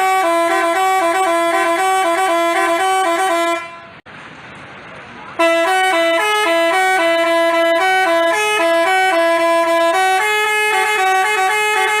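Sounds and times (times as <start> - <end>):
bus horn playing a tune: 0.0 - 4.0, 5.4 - 12.0.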